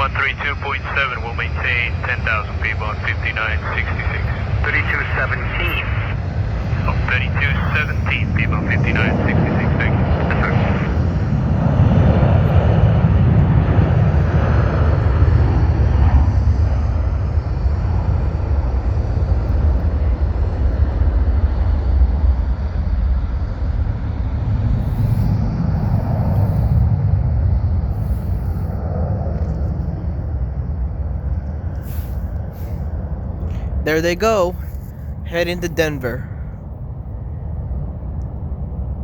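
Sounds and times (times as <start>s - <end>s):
jet engine roar: 0.0s - 33.9s
high jet whine: 2.4s - 12.0s.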